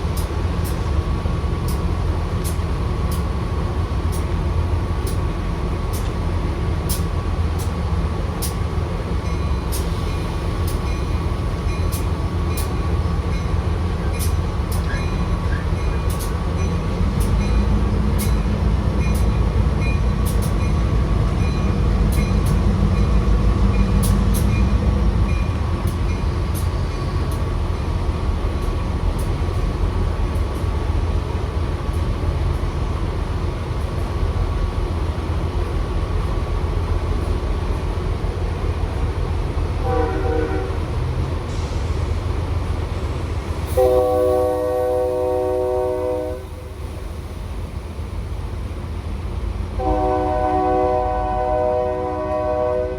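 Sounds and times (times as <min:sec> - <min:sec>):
train rumbling past: 0:00.0 - 0:52.9
train air horn blast: 0:39.8 - 0:40.9, 0:43.7 - 0:46.6, 0:49.8 - 0:52.9.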